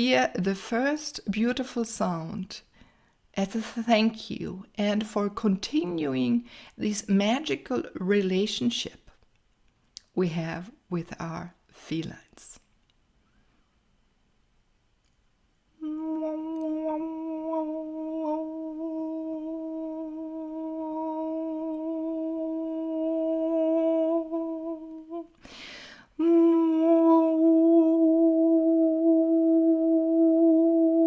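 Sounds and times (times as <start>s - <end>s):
woman holding a long note: 15.8s - 25.3s, 26.2s - 31.0s
breathy intake of air: 25.4s - 26.1s.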